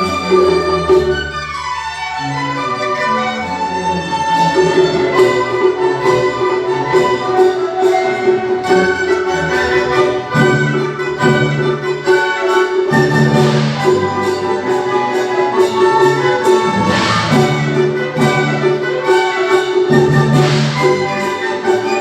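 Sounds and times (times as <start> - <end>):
bowed string melody: 0.0 - 22.0
light percussion strikes: 4.8 - 22.0.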